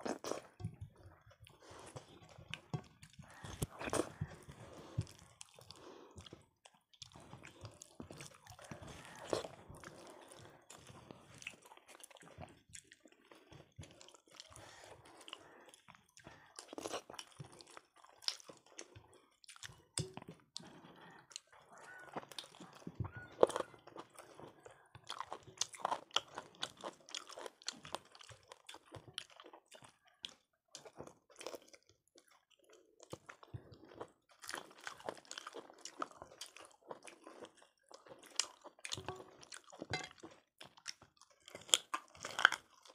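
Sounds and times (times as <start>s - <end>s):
people chewing and eating: 0.0s - 42.9s
food crunches: 34.0s - 42.9s.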